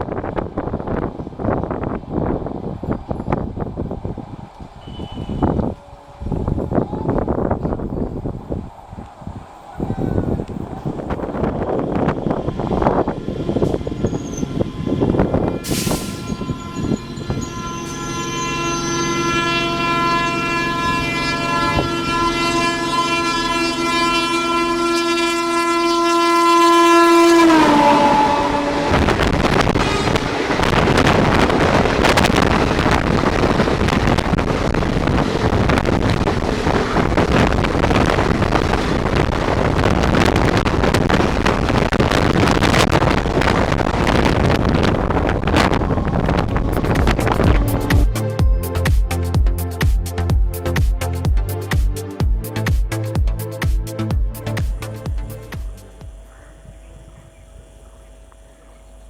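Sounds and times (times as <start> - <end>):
train rushing past: 0.0 - 56.9
locomotive horn blast: 4.8 - 5.8, 13.5 - 48.8, 54.4 - 59.0.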